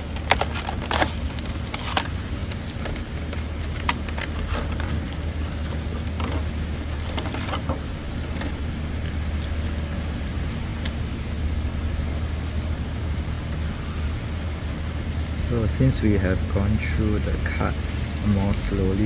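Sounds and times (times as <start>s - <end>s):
car cabin hum: 0.0s - 19.0s
cards and deck box handled: 0.1s - 8.6s.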